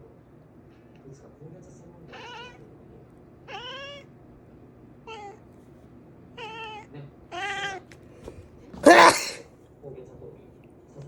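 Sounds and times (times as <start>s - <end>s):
cat meowing: 2.1s - 2.6s, 3.5s - 4.1s, 5.1s - 5.4s, 6.4s - 7.9s, 8.8s - 9.4s.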